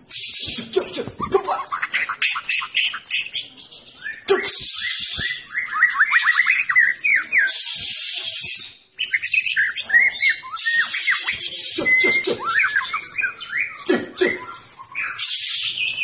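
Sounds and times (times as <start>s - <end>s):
bird singing whistles: 0.0s - 16.0s
bird harsh hissing calls: 10.6s - 12.9s.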